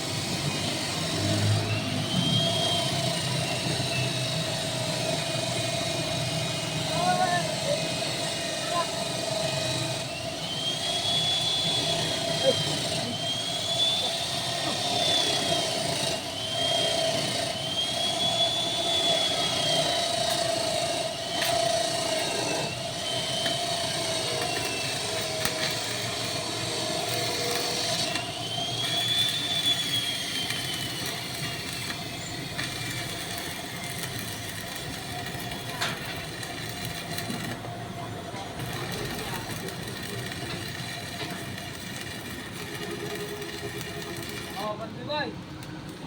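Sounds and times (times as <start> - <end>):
motor high whine: 0.0 - 44.8.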